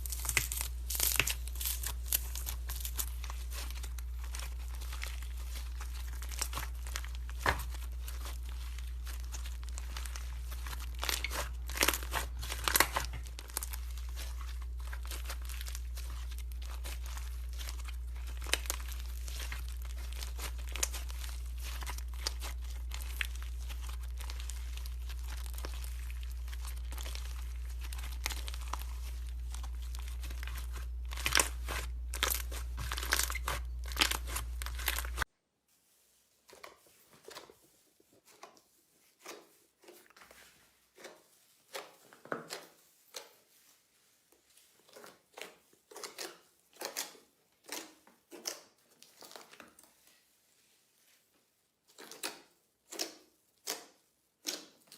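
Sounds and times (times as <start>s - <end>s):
slime squishing and popping: 0.0s - 35.2s.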